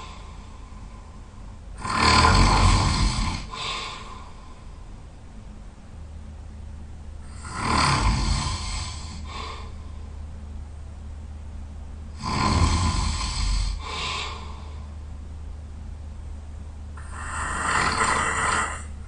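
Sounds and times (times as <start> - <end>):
steady low hum: 0.0 - 19.0
person snoring loudly: 1.8 - 3.8, 7.3 - 9.3, 12.2 - 14.4, 17.0 - 18.9.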